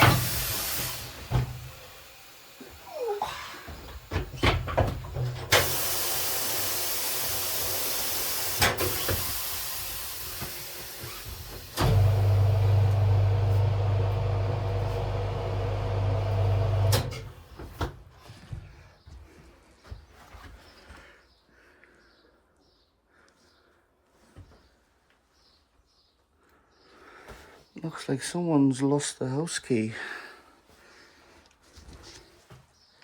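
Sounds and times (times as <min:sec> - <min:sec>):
air hissing from tyre: 0:00.0 - 0:17.0
electric motor humming: 0:00.0 - 0:17.4.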